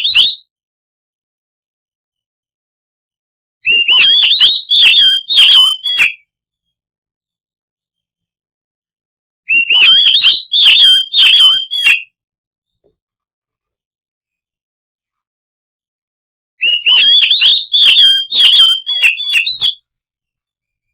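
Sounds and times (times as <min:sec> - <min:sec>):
bird singing: 0:03.7 - 0:06.2, 0:09.5 - 0:12.0, 0:16.6 - 0:19.8.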